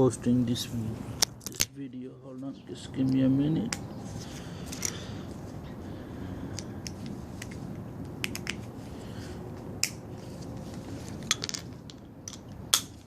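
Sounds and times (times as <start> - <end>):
low steady background noise: 0.0 - 13.0
hand tools clicking and tapping: 6.5 - 8.6.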